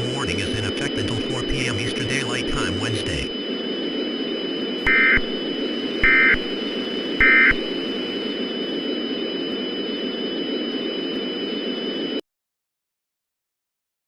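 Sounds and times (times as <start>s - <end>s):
buzzy digital chirps: 0.0s - 3.4s, 4.7s - 8.8s
radio hiss: 0.0s - 12.2s.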